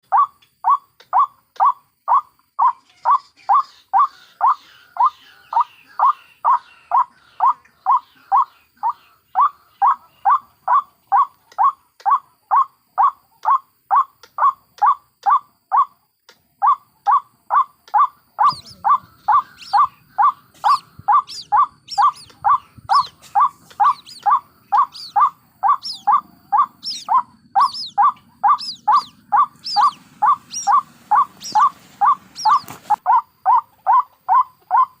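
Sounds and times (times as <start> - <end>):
higher sharper bird calls: 16.6 - 35.0
waterhen calling repeated notes: 16.6 - 35.0.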